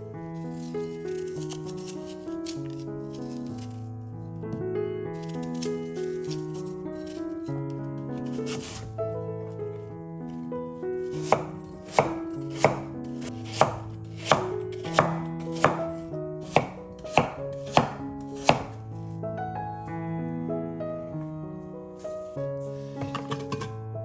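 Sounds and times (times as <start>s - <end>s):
soft instrumental music: 0.0s - 24.0s
knife chopping on cutting board: 11.1s - 18.8s.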